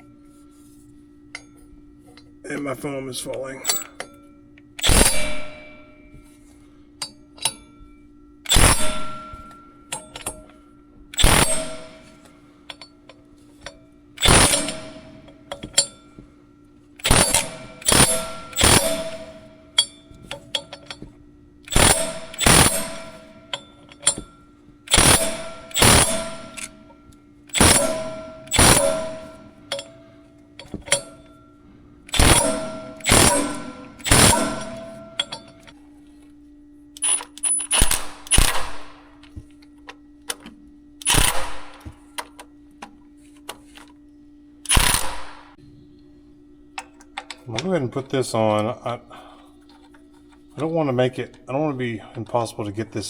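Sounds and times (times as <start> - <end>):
steady hum: 0.0 - 53.0
hard strikes on steel: 4.8 - 6.2, 8.5 - 10.5, 11.2 - 12.3, 14.2 - 16.2, 17.0 - 21.1, 21.7 - 31.4, 32.1 - 35.7.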